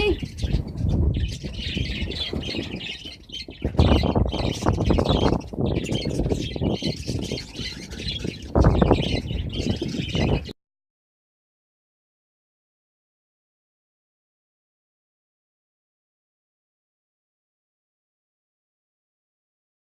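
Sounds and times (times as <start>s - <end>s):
cage birds chirping and squawking: 0.0s - 10.6s.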